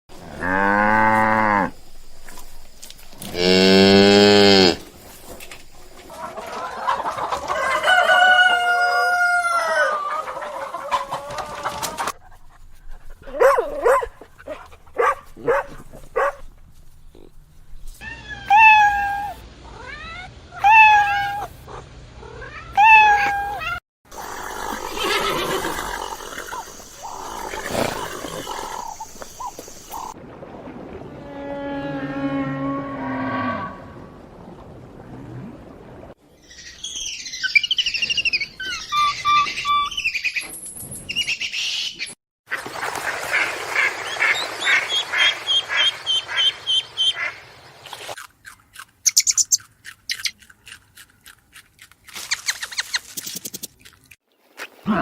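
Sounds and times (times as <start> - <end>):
farm animal calls: 24.2 - 30.2, 37.4 - 40.5.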